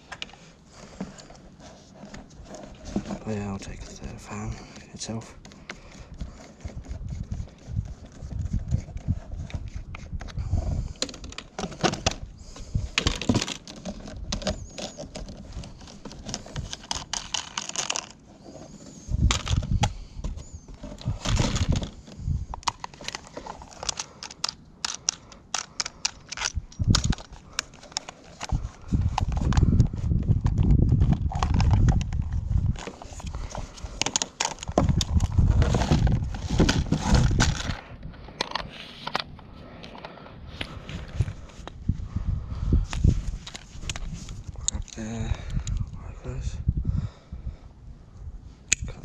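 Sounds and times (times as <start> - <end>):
plastic and metal clattering: 0.1 - 7.0, 10.9 - 37.8.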